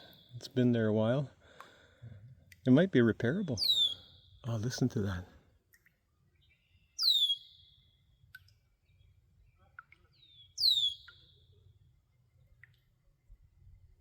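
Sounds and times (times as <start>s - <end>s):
bird whistle call: 3.6s - 4.2s, 7.0s - 7.8s, 10.2s - 11.4s.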